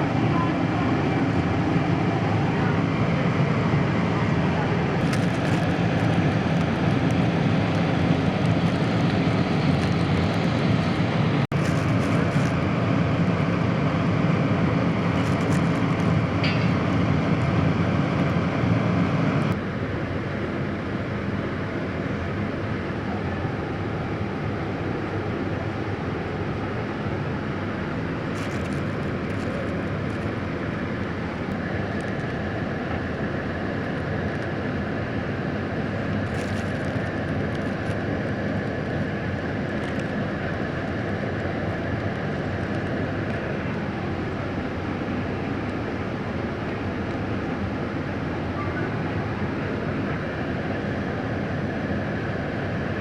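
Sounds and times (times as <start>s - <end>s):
mechanical rumble: 27.4s - 46.0s.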